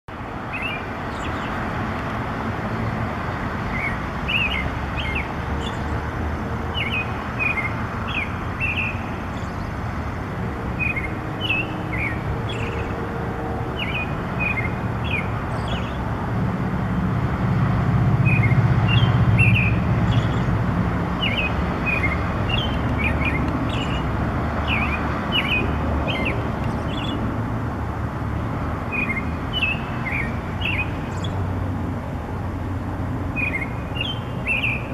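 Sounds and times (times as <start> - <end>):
songbird chirping: 21.2 - 27.2.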